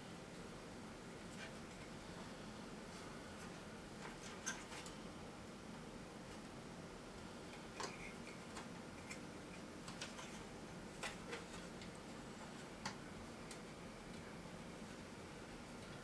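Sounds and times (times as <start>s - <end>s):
light clicks and taps of small parts: 7.5s - 12.0s, 12.6s - 14.2s.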